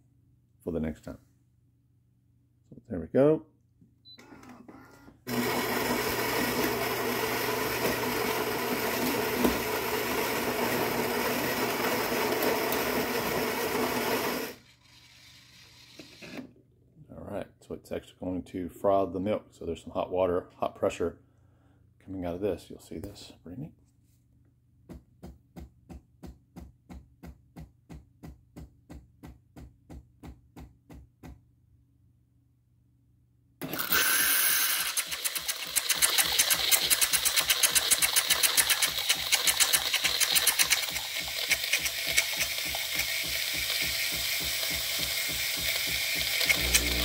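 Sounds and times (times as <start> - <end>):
espresso machine pump pulses: 5.3 - 16.4, 33.6 - 47.0
steam hissing: 34.9 - 47.0.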